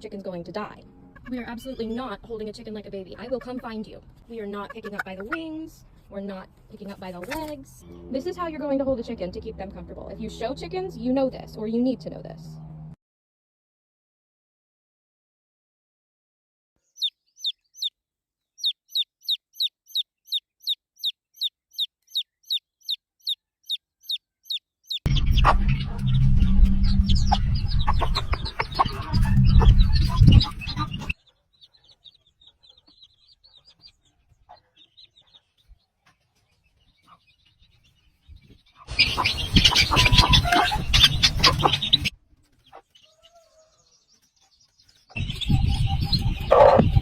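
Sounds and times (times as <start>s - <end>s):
chick peeping: 0.2s - 8.1s, 16.9s - 17.9s, 18.6s - 47.0s
heavy low rumble: 7.7s - 13.0s, 25.1s - 31.1s
rough chicken sounds: 38.7s - 43.9s.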